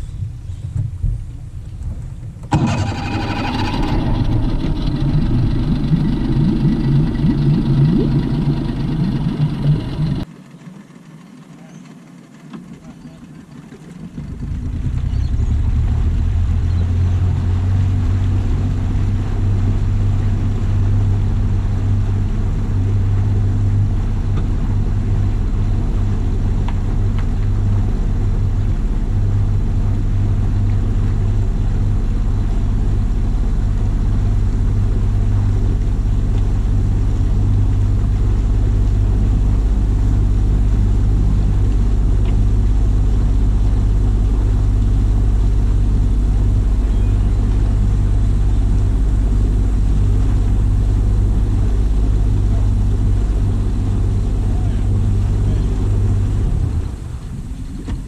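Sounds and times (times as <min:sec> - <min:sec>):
motorboat engine droning: 0:00.0 - 0:58.0.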